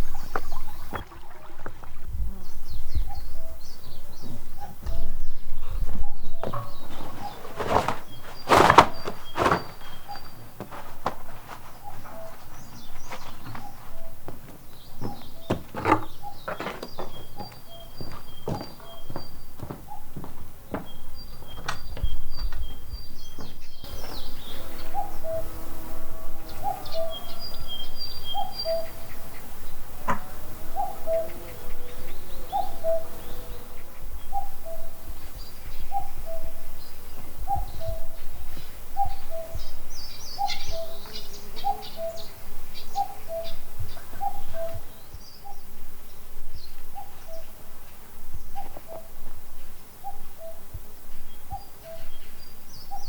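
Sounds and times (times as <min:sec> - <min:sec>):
small birds chirping: 0:00.0 - 0:53.0
soft knocks: 0:06.4 - 0:22.8.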